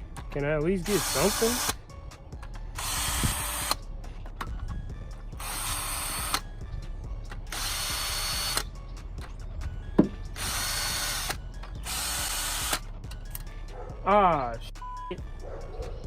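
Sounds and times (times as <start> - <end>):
electric drill straining: 0.8 - 1.8, 2.7 - 3.8, 5.4 - 6.6, 7.3 - 8.7, 10.3 - 13.4.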